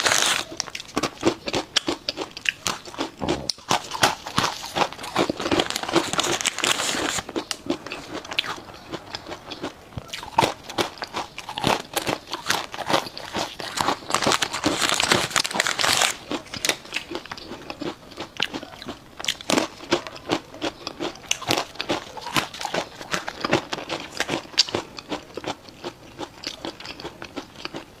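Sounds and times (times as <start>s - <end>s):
close-miked chewing and crunching: 0.0s - 28.0s.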